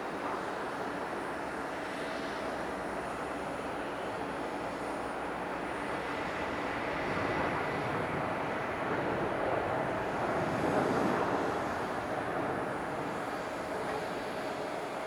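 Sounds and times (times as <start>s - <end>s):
jet airliner engines: 0.0s - 15.0s.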